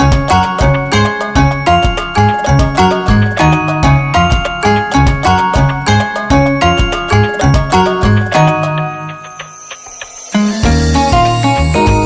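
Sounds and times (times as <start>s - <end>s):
plucked guitar music over a beat: 0.0s - 9.5s, 10.3s - 12.0s.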